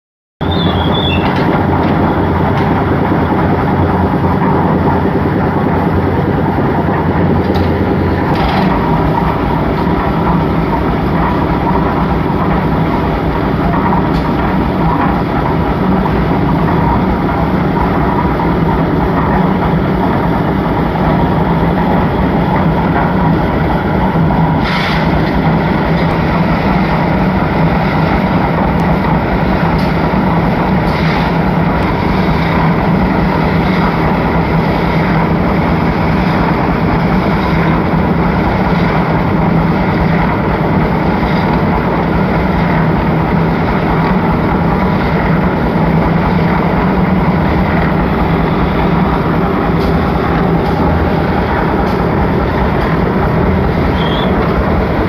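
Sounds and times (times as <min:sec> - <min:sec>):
concrete machine droning: 0:00.4 - 0:55.0.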